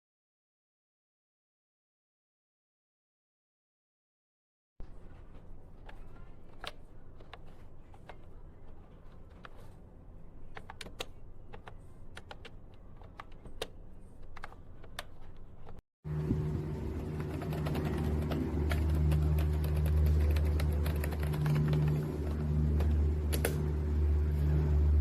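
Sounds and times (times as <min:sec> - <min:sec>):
low background hum: 0:04.8 - 0:25.0
keyboard key clicks: 0:10.5 - 0:15.8.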